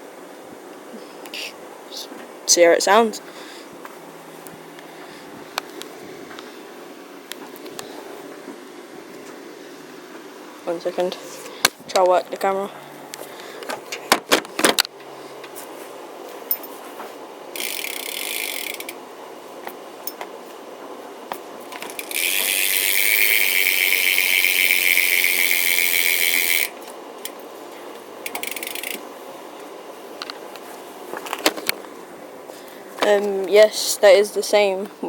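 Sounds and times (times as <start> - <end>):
bicycle hub ratcheting buzz: 17.5 - 19.0, 21.7 - 27.4, 28.2 - 29.1.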